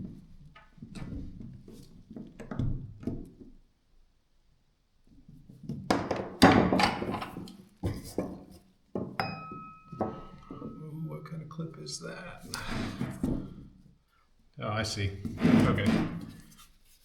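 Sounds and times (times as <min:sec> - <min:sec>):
tools knocking and clattering: 0:05.7 - 0:10.8.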